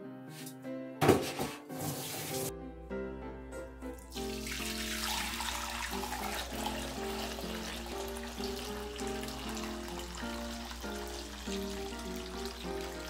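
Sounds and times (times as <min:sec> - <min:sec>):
background music: 0:00.0 - 0:13.0
liquid running: 0:04.0 - 0:13.0.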